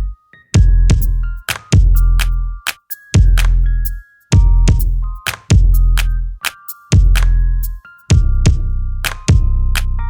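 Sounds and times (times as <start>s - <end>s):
electronic music: 0.0s - 10.0s
snare and hi-hat strikes: 0.6s - 4.0s, 4.6s - 8.3s
deep bass hits: 8.1s - 9.7s.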